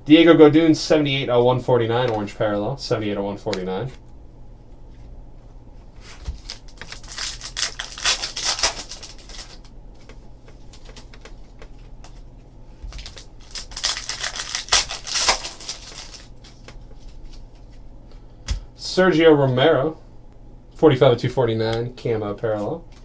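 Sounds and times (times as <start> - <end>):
card wrappers crinkling: 6.0 - 17.8.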